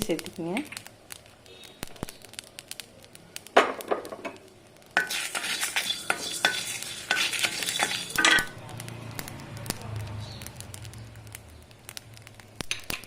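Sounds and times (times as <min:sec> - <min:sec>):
seeds rattling in a pan: 0:00.0 - 0:02.9, 0:03.9 - 0:13.0
spatula scraping a pan: 0:05.0 - 0:08.6.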